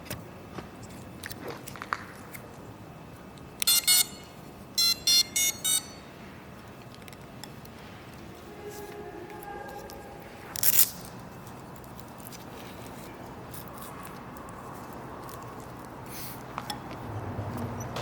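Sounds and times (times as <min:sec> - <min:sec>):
electronic beeps: 0:03.6 - 0:06.0.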